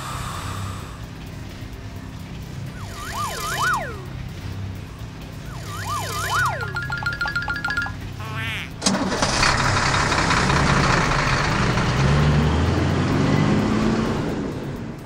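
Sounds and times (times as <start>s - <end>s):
cartoon truck engine rumble: 0.0s - 15.0s
engine starting clunk: 8.8s - 12.6s.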